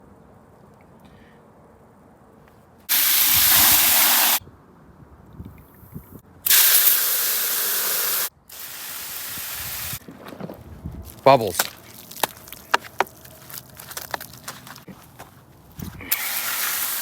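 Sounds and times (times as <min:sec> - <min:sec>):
spraying hiss: 0:02.9 - 0:04.4, 0:06.4 - 0:10.0, 0:16.1 - 0:17.0.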